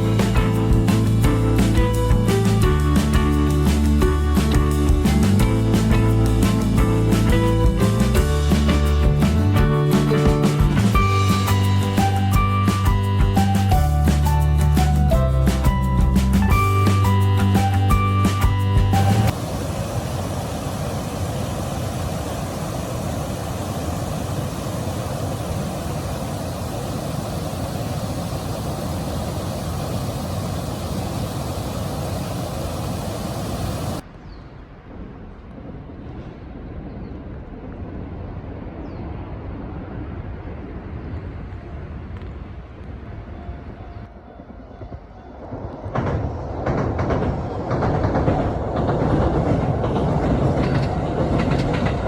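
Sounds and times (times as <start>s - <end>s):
vehicle running rumble: 0.0s - 34.0s
rumble of distant vehicles: 13.8s - 52.0s.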